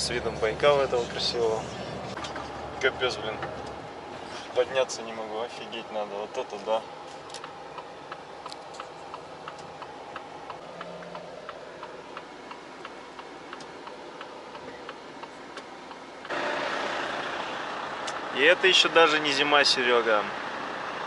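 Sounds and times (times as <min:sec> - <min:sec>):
engine and road noise: 0:00.0 - 0:21.0
low hum of truck cab: 0:00.0 - 0:21.0.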